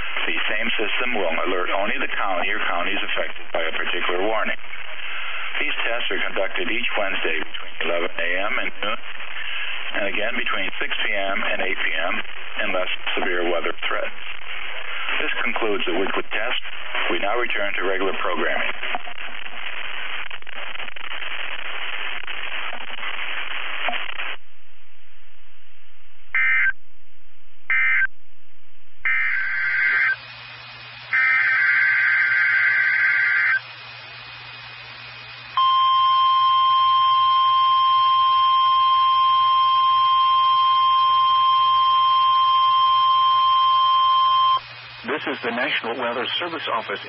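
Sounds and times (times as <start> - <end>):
radio static hiss: 0.0 - 24.4, 26.3 - 26.8, 27.7 - 28.1, 29.0 - 47.0
low hum: 18.7 - 31.2
buzzy digital data tones: 29.0 - 47.0
steady warning alarm tone: 29.1 - 45.7.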